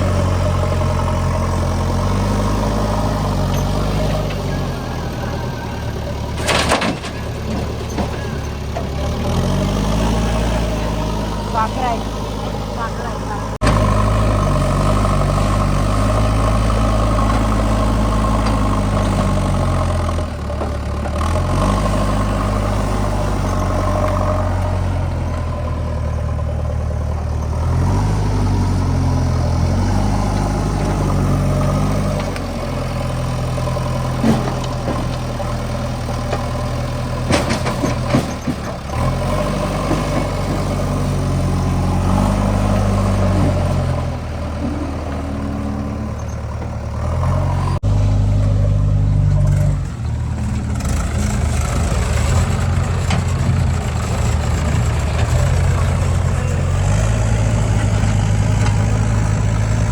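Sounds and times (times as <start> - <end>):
diesel engine revving: 0.0 - 59.9.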